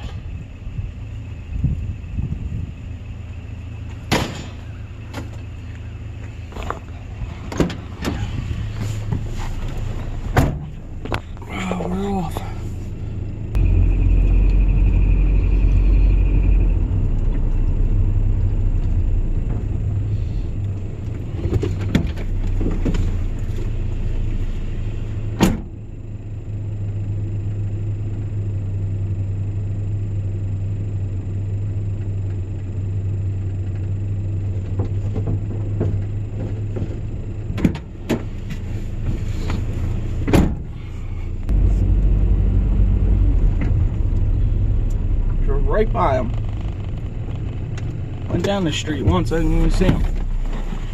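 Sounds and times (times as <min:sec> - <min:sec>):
engine and road rumble: 0:00.0 - 0:50.9
steady high tone: 0:13.6 - 0:18.1.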